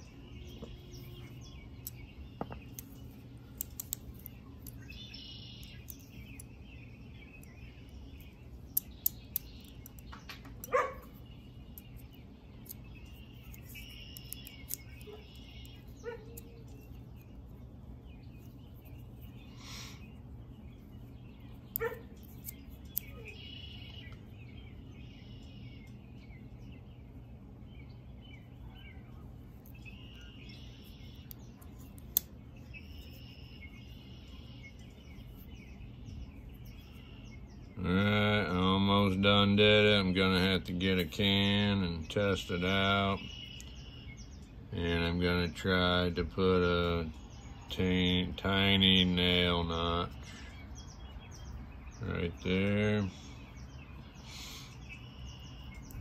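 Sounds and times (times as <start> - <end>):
birds chirping: 0.0 - 56.0
steady low hum: 0.0 - 56.0
sharp clicks: 2.6 - 5.0
dog barking: 10.7 - 11.1, 16.0 - 16.4, 21.8 - 22.1.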